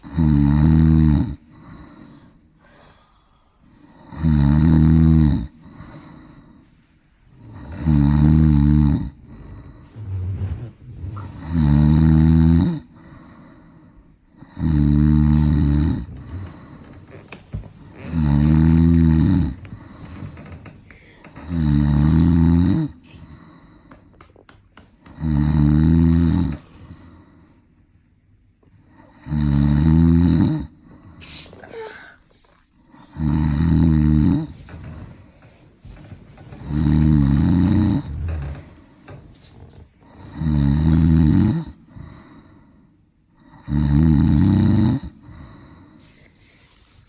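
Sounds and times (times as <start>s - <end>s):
man snoring loudly: 0.0s - 1.9s, 3.8s - 5.9s, 7.4s - 13.1s, 14.4s - 17.2s, 17.9s - 20.3s, 21.3s - 23.6s, 25.0s - 26.7s, 28.9s - 30.8s, 32.9s - 35.0s, 36.6s - 42.2s, 43.4s - 45.7s
quiet breathing: 0.0s - 47.0s.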